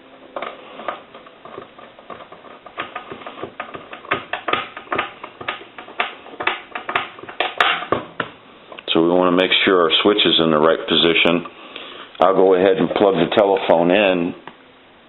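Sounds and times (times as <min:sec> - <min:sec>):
plastic telephone clicks and knocks: 0:00.4 - 0:08.3.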